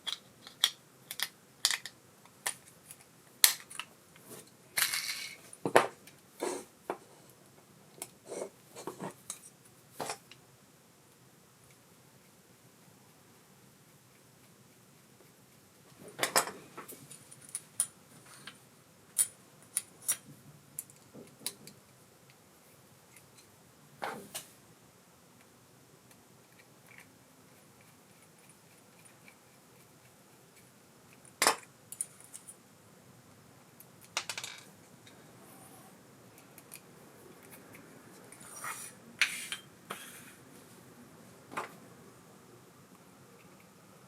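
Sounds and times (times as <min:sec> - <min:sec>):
small metal parts clicking and clinking: 0:00.0 - 0:03.9, 0:04.8 - 0:05.5.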